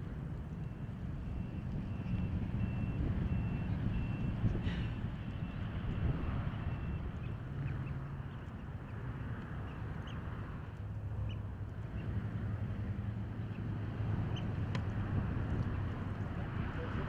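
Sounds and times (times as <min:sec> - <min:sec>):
steady low rumble: 0:00.0 - 0:17.0
distant backup alarm beeping: 0:00.6 - 0:07.1.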